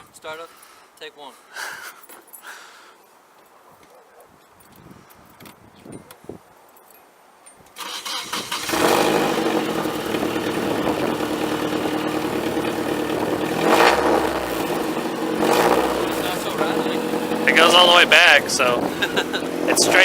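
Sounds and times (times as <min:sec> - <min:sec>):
car engine cranking: 0:07.8 - 0:20.0
engine throttle blips: 0:07.8 - 0:20.0
loud car engine idling: 0:08.6 - 0:20.0.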